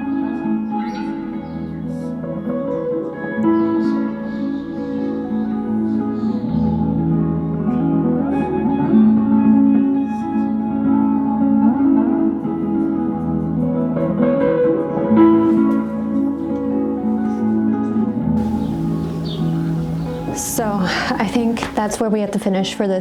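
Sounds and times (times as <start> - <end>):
plucked guitar music: 18.4 - 22.0.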